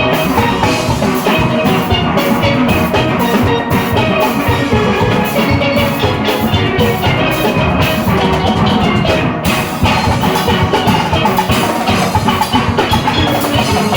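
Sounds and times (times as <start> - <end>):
drum kit and percussion rhythm: 0.0 - 13.9
steel pans playing melodic runs: 0.0 - 13.9.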